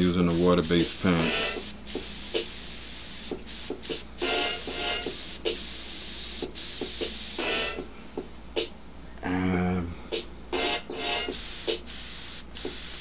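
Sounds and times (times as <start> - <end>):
airbrush spraying hiss: 0.0 - 7.4, 11.3 - 13.0.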